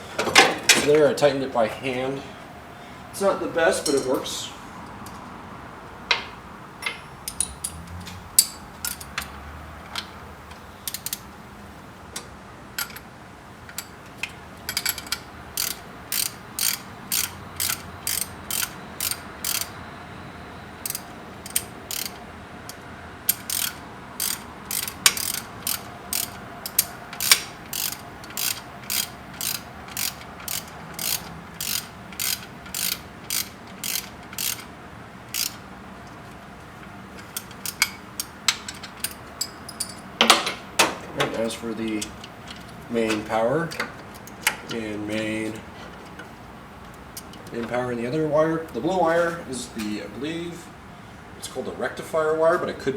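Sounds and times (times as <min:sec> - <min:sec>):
socket ratchet clicking: 0:06.8 - 0:11.3, 0:13.7 - 0:19.8, 0:20.8 - 0:35.7, 0:37.1 - 0:46.2.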